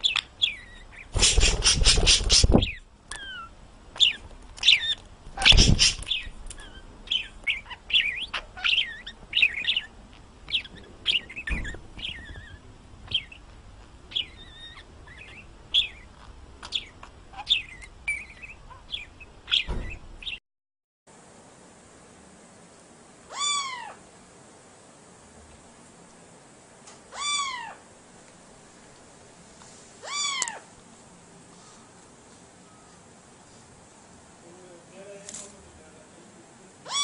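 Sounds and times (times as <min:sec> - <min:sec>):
parrot chirping: 0:00.0 - 0:20.4, 0:23.3 - 0:24.0, 0:27.1 - 0:27.8, 0:30.0 - 0:30.7.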